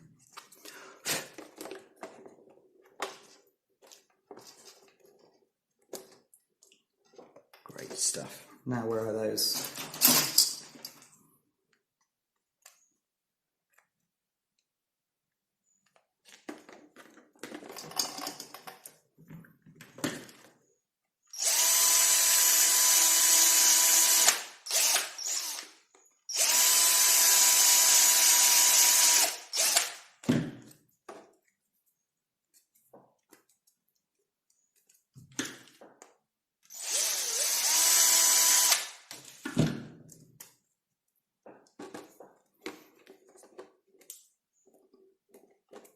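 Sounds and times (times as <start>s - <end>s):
electric drill whining: 21.3s - 30.0s, 36.7s - 39.0s.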